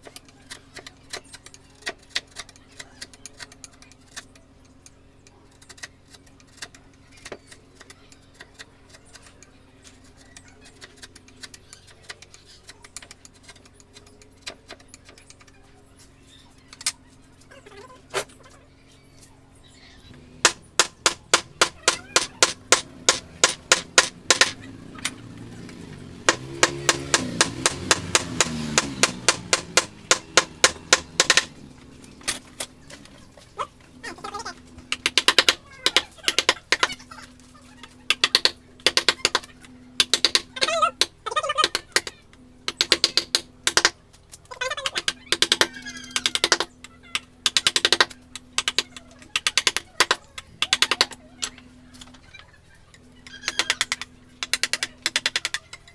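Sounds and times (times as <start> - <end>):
mallet striking chisel into wood: 20.4 - 24.6, 26.3 - 31.6, 34.9 - 36.9.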